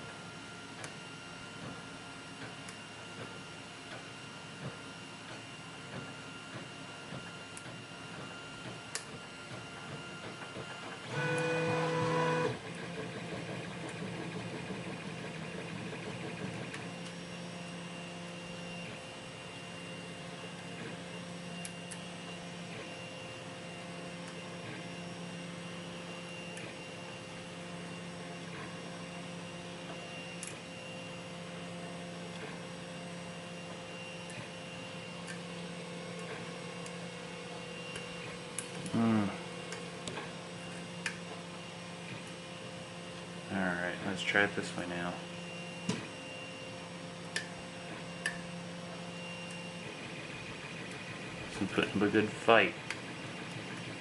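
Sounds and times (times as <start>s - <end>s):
stepper motors whining: 10.8s - 12.6s.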